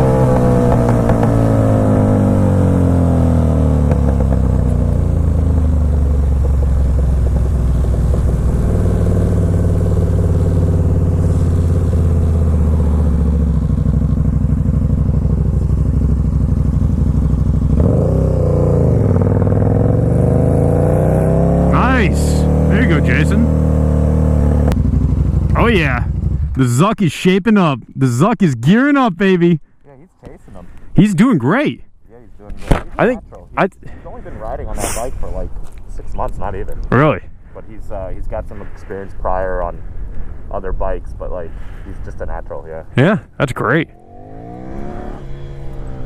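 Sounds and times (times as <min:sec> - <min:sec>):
motorcycle engine running: 0:00.0 - 0:26.8, 0:43.9 - 0:46.0.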